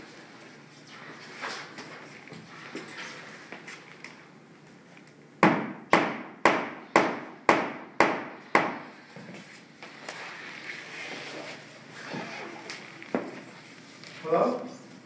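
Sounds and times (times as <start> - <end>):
hammer striking floorboard: 5.4 - 8.9.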